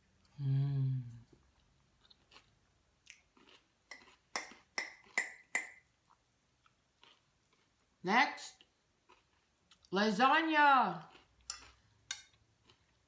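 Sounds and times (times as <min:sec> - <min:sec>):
chewing: 0:01.3 - 0:05.4, 0:06.1 - 0:07.8, 0:08.6 - 0:09.9, 0:11.0 - 0:13.0.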